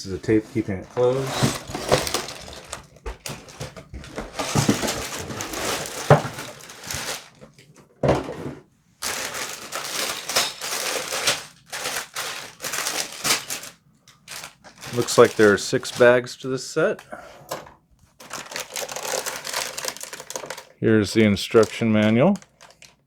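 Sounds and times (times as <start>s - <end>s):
plastic bags crinkling: 0.0s - 7.6s, 9.0s - 17.0s, 18.1s - 23.0s
cardboard box being opened: 0.5s - 7.4s.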